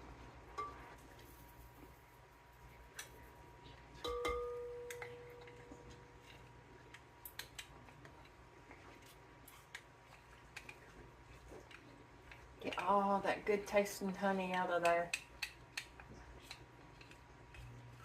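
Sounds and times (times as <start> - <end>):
utensil clinking metal bowl: 4.0 - 5.8.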